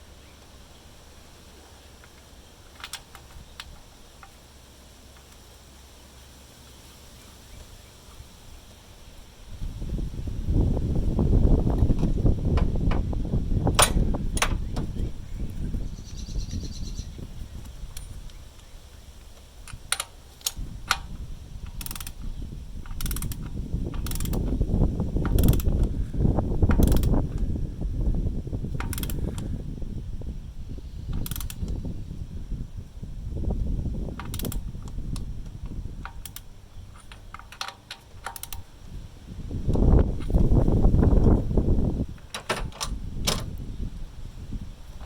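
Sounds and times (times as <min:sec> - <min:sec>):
socket wrench ratchet clicking: 0:19.7 - 0:24.6, 0:25.2 - 0:26.0, 0:26.7 - 0:27.5, 0:28.8 - 0:29.5, 0:31.1 - 0:31.8, 0:34.2 - 0:38.7.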